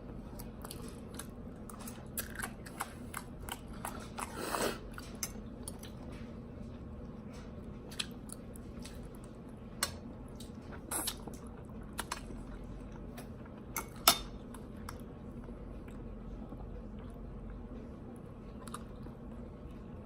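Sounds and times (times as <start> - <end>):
chewing food: 0.0 - 20.0
steady low hum: 0.0 - 20.0.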